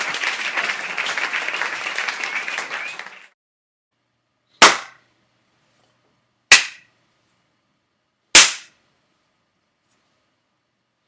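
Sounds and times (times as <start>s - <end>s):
sharp hand claps: 0.0s - 3.4s.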